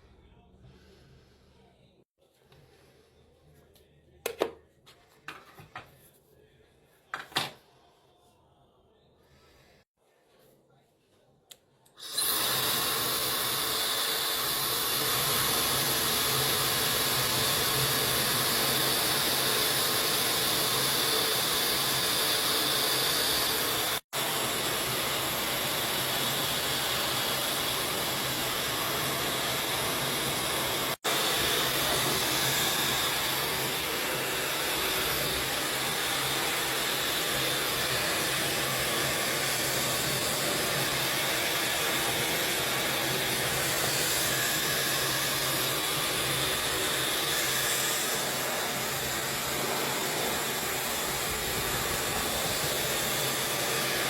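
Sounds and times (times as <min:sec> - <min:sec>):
blow dryer air rushing: 0:12.0 - 0:54.0.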